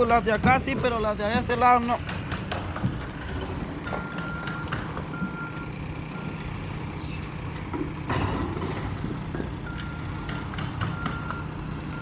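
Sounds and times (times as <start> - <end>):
engine running: 0.0 - 12.0
vehicle reversing alarm beeping: 3.9 - 6.7, 9.6 - 12.0.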